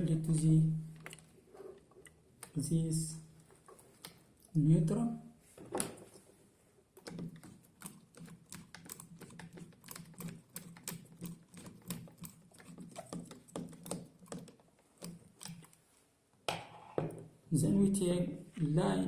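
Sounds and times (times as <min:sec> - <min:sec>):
rapid irregular clicking: 0:07.0 - 0:15.9.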